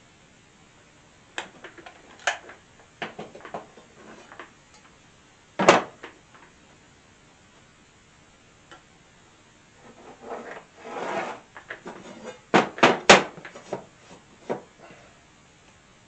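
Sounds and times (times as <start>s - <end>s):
scraping slide: 9.8s - 12.5s.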